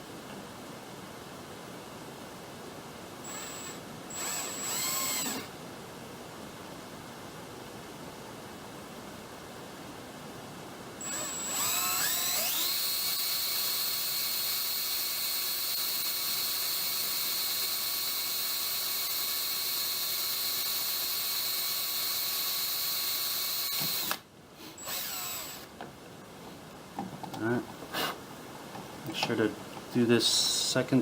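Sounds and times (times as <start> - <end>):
electric drill running: 3.3 - 5.5, 11.0 - 24.2, 24.8 - 25.7.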